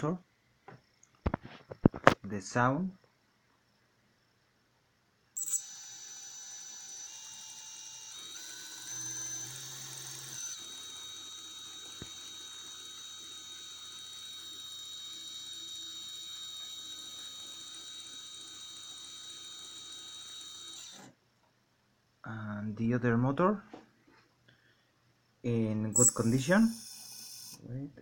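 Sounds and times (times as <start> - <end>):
electric motor high whine: 5.4 - 21.1, 26.0 - 27.6
mechanical noise: 25.9 - 27.8.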